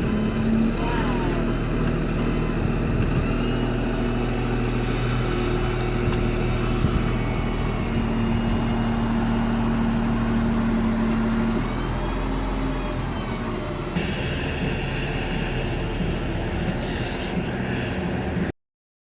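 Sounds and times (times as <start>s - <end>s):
forklift engine idling: 0.0s - 18.5s.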